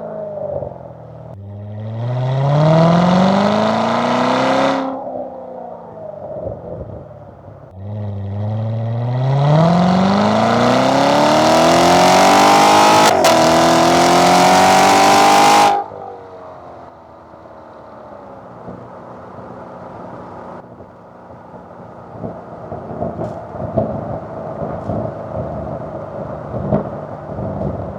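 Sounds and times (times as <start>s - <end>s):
car exhaust accelerating: 0.0s - 27.9s
exhaust pops and crackles: 20.6s - 27.9s.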